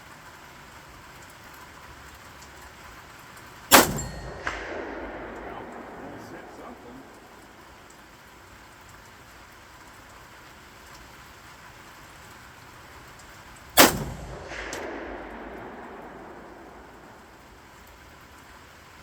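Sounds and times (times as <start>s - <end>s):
faint sharp crack: 3.7s - 8.0s, 13.8s - 18.0s
rifle gunshot with echo: 3.7s - 8.0s, 13.8s - 18.1s.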